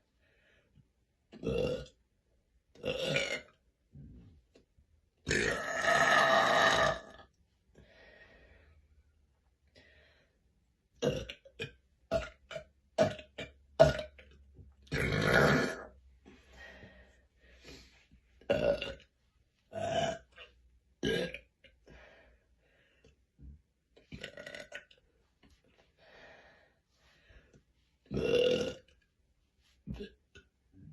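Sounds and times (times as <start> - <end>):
woman burping: 5.3 - 7.2, 11.0 - 14.2, 18.5 - 19.0, 28.1 - 28.8.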